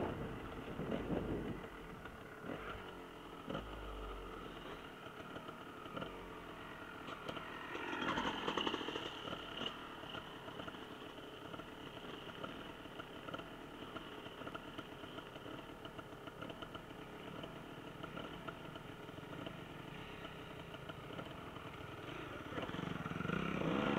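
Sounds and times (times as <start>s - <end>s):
motorcycle engines running: 0.0s - 23.9s.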